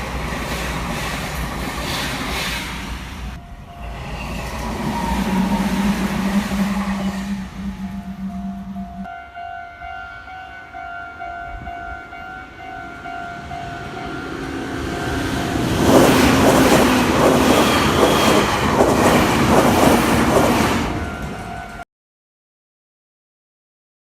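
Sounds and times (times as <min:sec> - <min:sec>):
electric train rumble: 0:00.0 - 0:21.8
level crossing bell ringing: 0:05.6 - 0:15.8
train wheels clattering over rail joints: 0:15.5 - 0:21.4.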